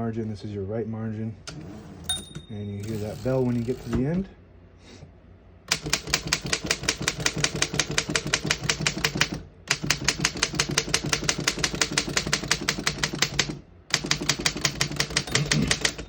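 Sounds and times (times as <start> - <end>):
manual typewriter typing: 2.6 - 4.2, 5.7 - 16.0.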